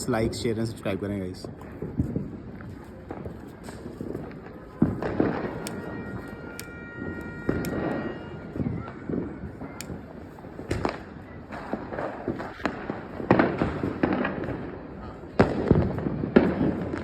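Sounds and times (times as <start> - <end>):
firecrackers banging and crackling: 1.4 - 17.0
faint steady whistle: 5.6 - 9.0.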